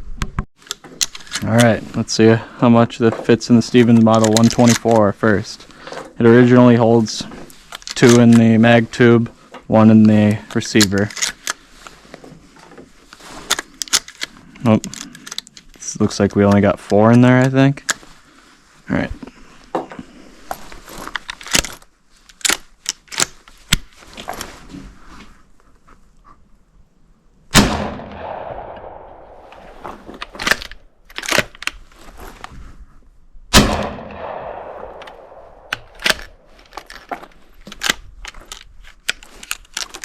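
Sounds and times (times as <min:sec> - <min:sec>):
shotgun shots echoing: 0:27.5 - 0:30.1, 0:33.5 - 0:36.5.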